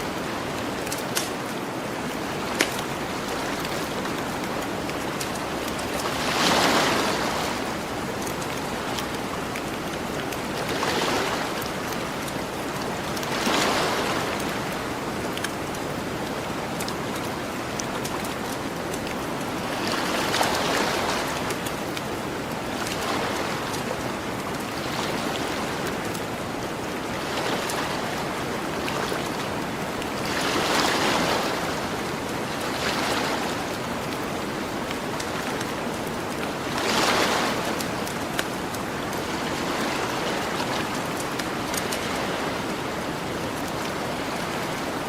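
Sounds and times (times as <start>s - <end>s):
ocean waves washing onto beach: 0.0s - 45.0s
campfire crackling and popping: 0.6s - 6.0s, 14.4s - 19.5s.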